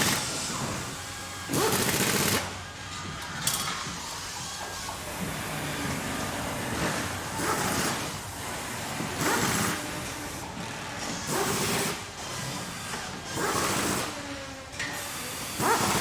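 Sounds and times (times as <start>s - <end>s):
factory machinery running: 0.0s - 16.0s.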